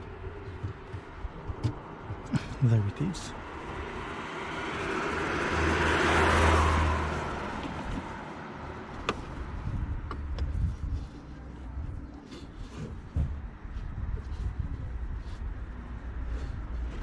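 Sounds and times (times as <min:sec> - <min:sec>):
car passing by: 0:03.5 - 0:08.9.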